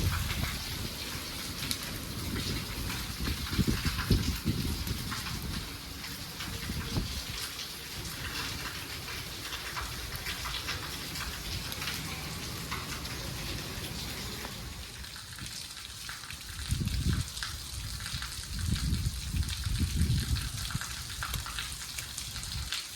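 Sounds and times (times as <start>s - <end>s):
heavy rain falling: 0.0s - 22.9s.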